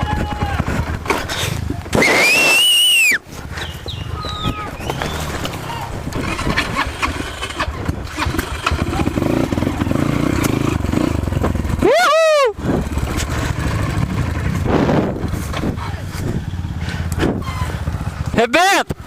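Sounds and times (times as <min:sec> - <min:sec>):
person shouting: 0:00.0 - 0:00.7, 0:11.8 - 0:12.6
motorcycle engines running: 0:00.0 - 0:02.0, 0:02.6 - 0:19.0.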